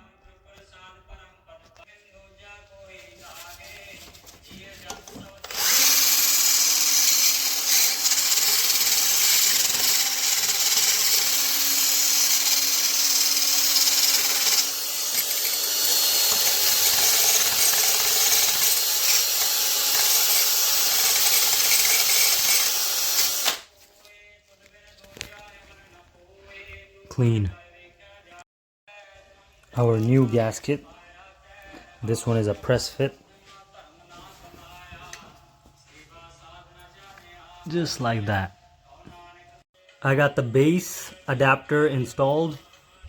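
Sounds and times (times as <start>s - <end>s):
power drill scrubbing metal: 5.4s - 23.7s.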